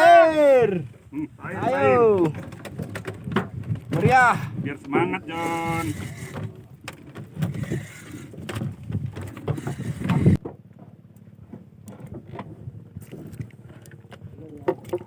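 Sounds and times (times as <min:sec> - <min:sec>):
rumble of wind and water: 0:00.0 - 0:15.0
knocks on a boat: 0:02.2 - 0:05.1.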